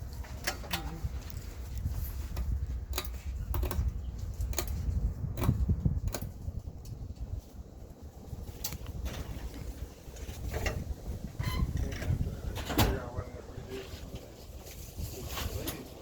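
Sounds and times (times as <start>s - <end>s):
ceiling fan air buffeting microphone: 0.0s - 16.0s
sharp clicks: 2.4s - 4.8s.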